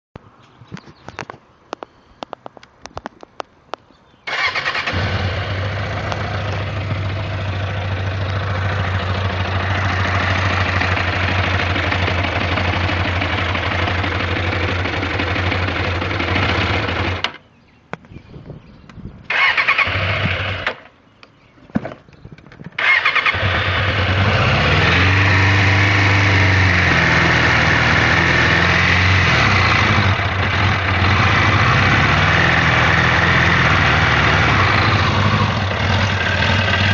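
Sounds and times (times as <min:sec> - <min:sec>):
motorcycle engine running and revving: 0:04.5 - 0:17.4, 0:19.4 - 0:20.8, 0:22.8 - 0:36.9.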